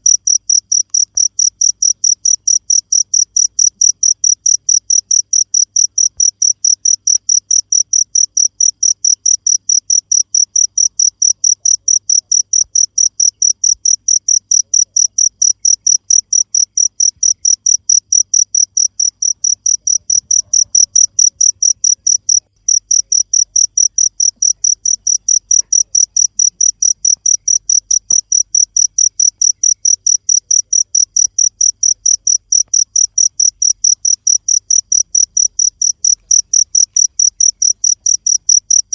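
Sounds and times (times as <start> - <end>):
cricket chirping: 0.0 - 38.9.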